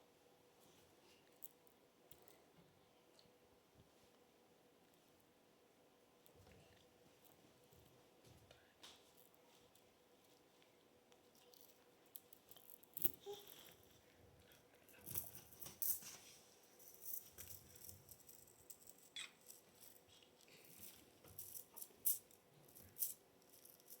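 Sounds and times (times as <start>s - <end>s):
small clicks and ticks: 16.8s - 24.0s.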